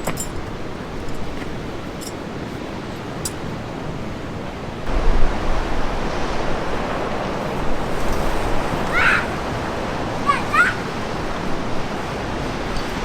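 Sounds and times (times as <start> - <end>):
wind buffeting microphone: 0.0 - 13.0
low rumble: 4.9 - 8.8.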